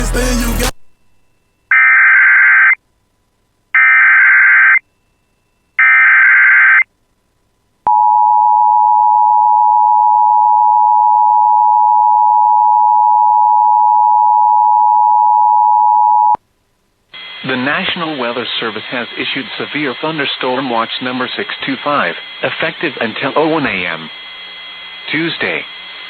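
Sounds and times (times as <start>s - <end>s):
screeching digital data bursts: 17.2s - 26.0s.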